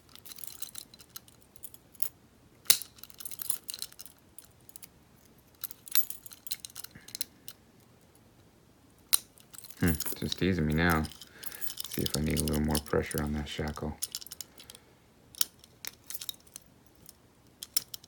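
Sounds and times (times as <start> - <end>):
keys clicking and jingling on ring: 0.0 - 2.1, 2.7 - 4.9, 5.5 - 7.6, 9.2 - 14.8, 15.4 - 18.0.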